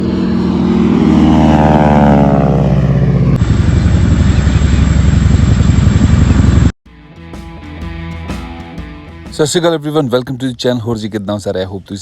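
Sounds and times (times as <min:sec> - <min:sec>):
aircraft passing close: 0:00.0 - 0:06.7
helicopter rotor beat: 0:00.0 - 0:06.8.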